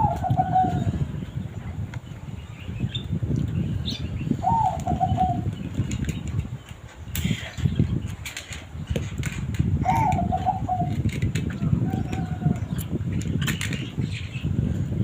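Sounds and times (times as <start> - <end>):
rough low rumble: 0.0 - 8.1, 8.8 - 15.0
bird calling: 4.4 - 5.5, 9.8 - 11.0.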